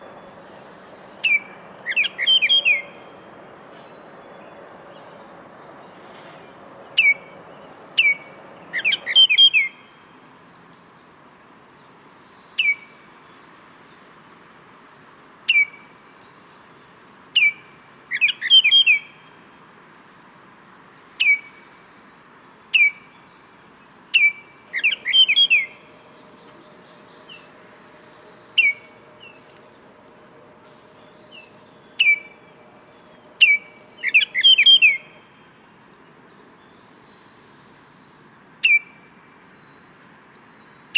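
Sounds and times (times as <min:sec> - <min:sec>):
oriole singing whistled notes: 0:00.0 - 0:06.1, 0:24.2 - 0:35.2.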